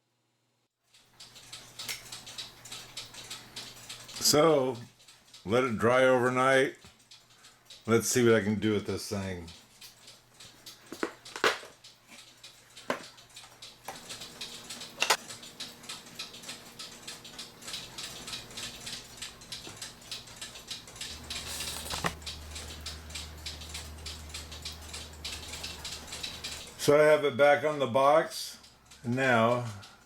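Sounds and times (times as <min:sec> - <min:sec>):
wooden parts knocking and clicking: 0:10.9 - 0:11.8
steady low hum: 0:11.8 - 0:27.4.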